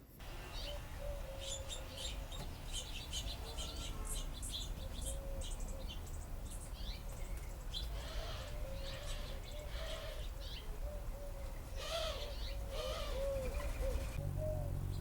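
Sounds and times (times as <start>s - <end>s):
sparrows chirping: 0.0s - 15.0s.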